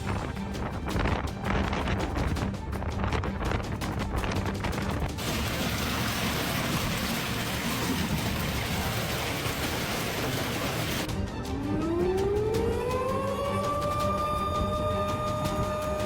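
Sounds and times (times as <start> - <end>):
heavy rain pelting down: 5.2 - 11.1
background music with beat: 9.0 - 16.0.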